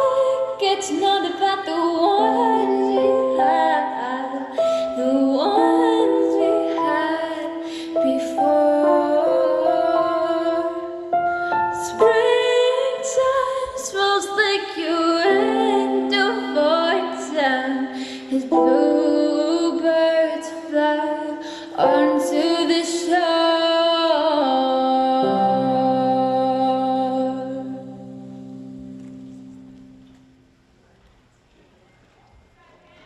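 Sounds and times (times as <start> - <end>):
layered female vocals: 0.0 - 28.6.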